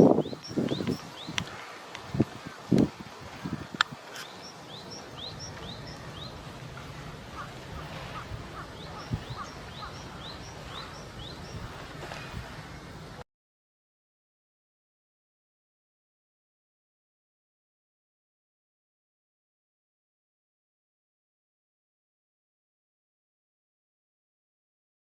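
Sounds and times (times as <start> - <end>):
outdoor background noise: 0.0 - 13.2
wild birds chirping: 0.0 - 13.2.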